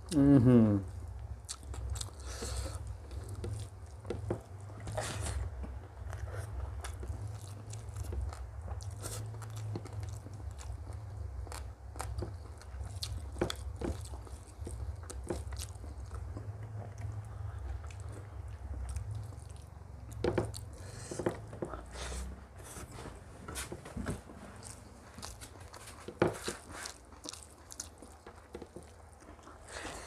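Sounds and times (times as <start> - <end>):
chewing and crunching food: 1.0 - 23.0, 24.0 - 30.0.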